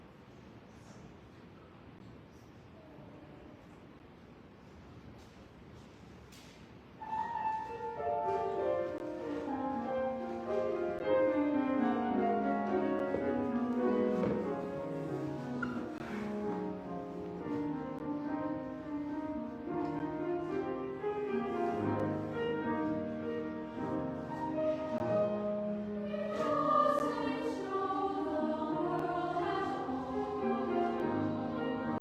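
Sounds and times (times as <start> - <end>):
piano accompaniment: 7.0 - 32.0
children's choir singing: 7.7 - 32.0.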